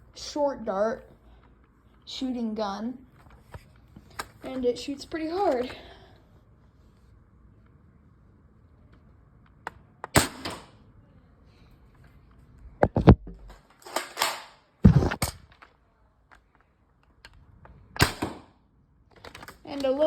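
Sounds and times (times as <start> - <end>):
toy blaster clacks and thumps: 12.8 - 15.8.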